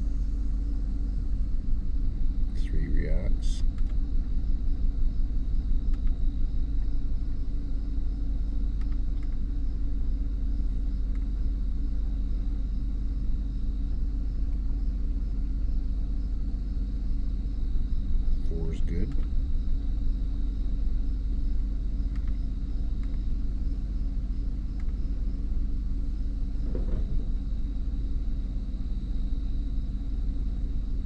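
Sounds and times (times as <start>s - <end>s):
engine idling unevenly: 0.0s - 3.6s.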